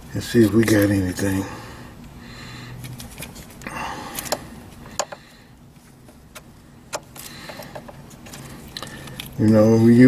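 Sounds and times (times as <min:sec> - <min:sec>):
wire rustling and scraping: 0:02.8 - 0:04.9.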